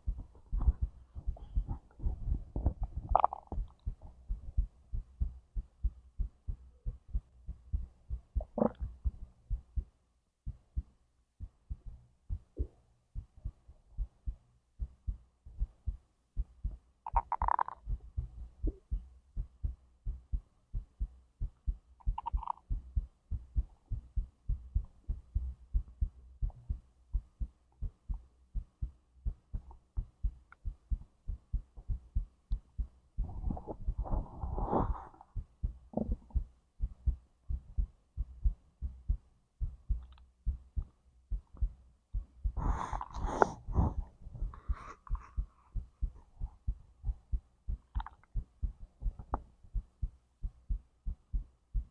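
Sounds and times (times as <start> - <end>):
heartbeat thumps: 0.0 - 51.9
stomach gurgles: 0.5 - 4.1, 8.4 - 9.0, 17.1 - 18.0, 22.0 - 22.8, 33.2 - 35.3, 35.9 - 36.4, 47.9 - 48.4.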